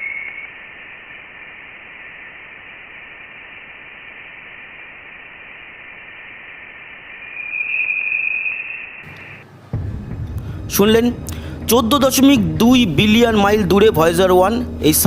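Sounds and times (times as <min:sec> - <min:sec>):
thin high tone: 0:00.0 - 0:09.6
steady hiss: 0:00.0 - 0:15.0.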